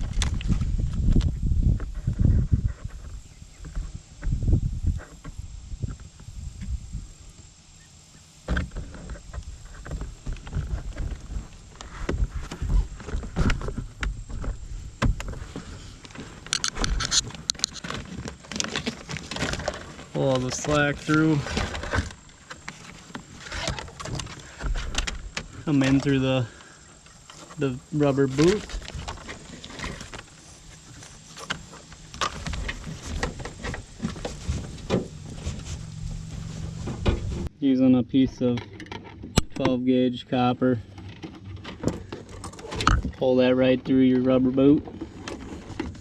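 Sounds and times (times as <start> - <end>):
wire rubbing against rubber: 8.6 - 24.9, 27.2 - 37.5
sharp scratchy clicks: 16.0 - 24.4.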